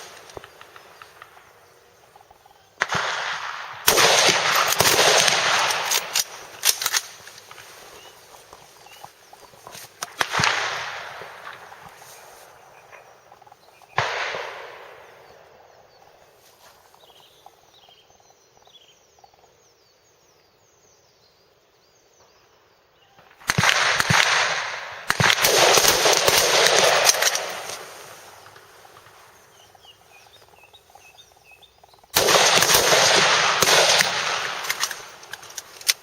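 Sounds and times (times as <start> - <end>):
rifle shots: 0.0 - 13.2, 13.8 - 15.6, 23.4 - 36.0
rapid overlapping rifle fire: 0.0 - 15.8, 23.4 - 36.0.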